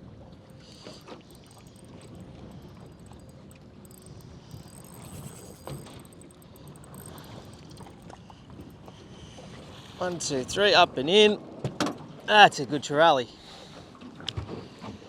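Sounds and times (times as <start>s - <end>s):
water slapping boat hull: 0.0s - 10.7s.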